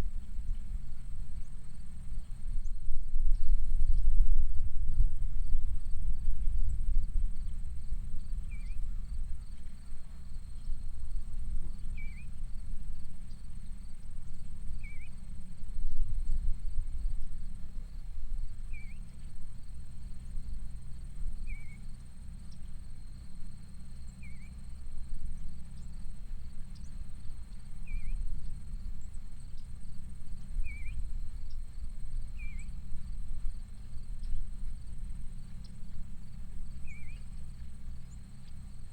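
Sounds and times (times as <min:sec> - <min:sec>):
low rumble: 0:00.0 - 0:14.8
bird chirping: 0:08.4 - 0:09.8, 0:11.7 - 0:12.4, 0:18.7 - 0:19.3, 0:24.2 - 0:24.6, 0:26.7 - 0:28.2, 0:30.4 - 0:31.6, 0:32.3 - 0:32.8, 0:35.5 - 0:38.8.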